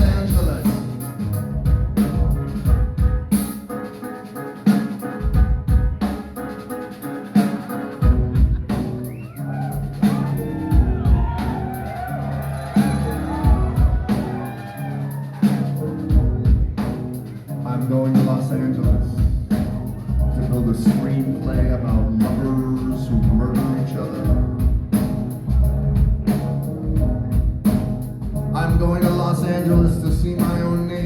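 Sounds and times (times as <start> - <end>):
bass groove: 0.0 - 4.0, 4.6 - 31.0
drum kit: 0.0 - 31.0
swooping gliding tones: 6.0 - 17.4.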